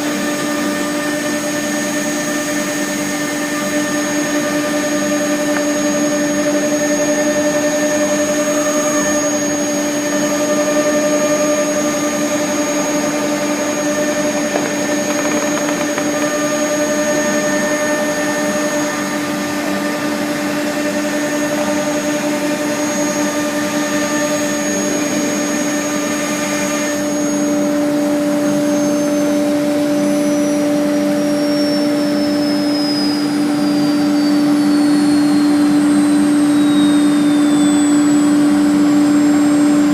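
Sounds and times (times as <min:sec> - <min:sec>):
dust collector drone: 0:00.0 - 0:39.9
router spindle whining: 0:02.4 - 0:31.2
wood cutting hiss: 0:12.1 - 0:18.0.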